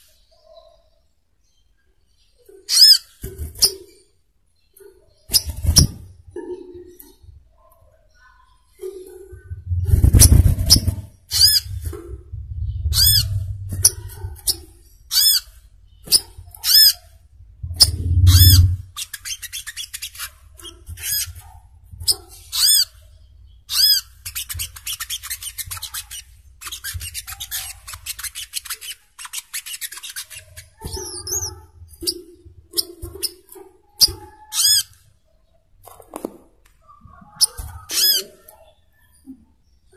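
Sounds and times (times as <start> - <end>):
bird chirping and trilling: 0.0 - 35.4, 36.8 - 39.8
low rumbling thumps: 9.3 - 14.4, 17.3 - 18.9.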